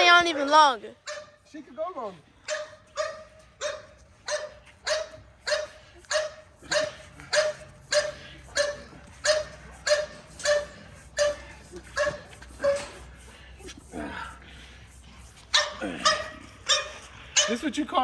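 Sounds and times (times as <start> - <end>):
dog barking: 1.0 - 1.4, 2.5 - 13.0, 15.5 - 17.7.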